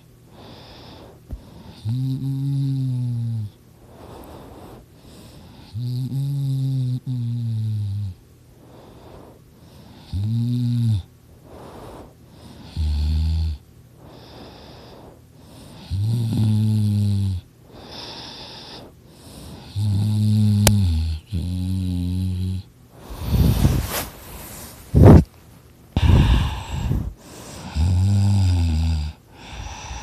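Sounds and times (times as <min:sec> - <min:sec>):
quiet breathing: 0:00.0 - 0:30.0
person snoring loudly: 0:01.6 - 0:04.7, 0:05.6 - 0:08.2, 0:10.0 - 0:14.8, 0:15.6 - 0:24.0, 0:26.0 - 0:30.0.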